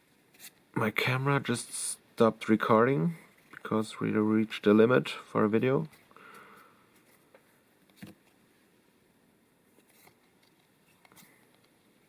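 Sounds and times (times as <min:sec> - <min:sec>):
cards and wrappers handled: 0:09.7 - 0:11.8.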